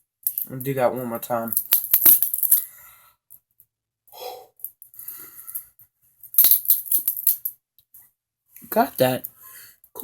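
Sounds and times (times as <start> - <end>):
soft breaths: 2.6 - 3.4, 4.1 - 6.0, 9.3 - 9.9.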